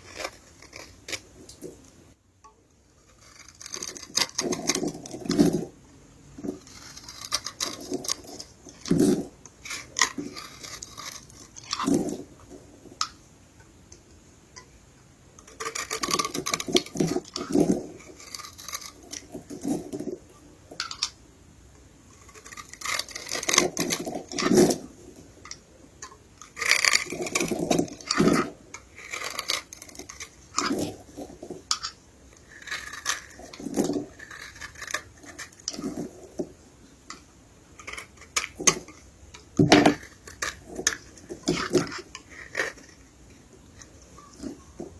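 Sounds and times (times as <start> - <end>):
soap crunching and crackling: 0.0 - 1.8, 6.5 - 12.3, 22.2 - 24.9, 26.4 - 36.5, 37.8 - 43.1.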